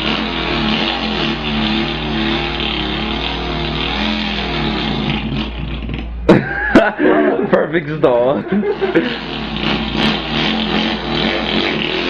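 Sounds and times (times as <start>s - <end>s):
man imitating engine with voice: 6.8s - 12.0s.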